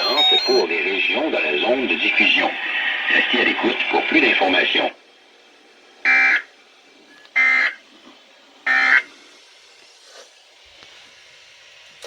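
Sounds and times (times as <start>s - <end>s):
harsh digital data bursts: 0.0s - 0.8s.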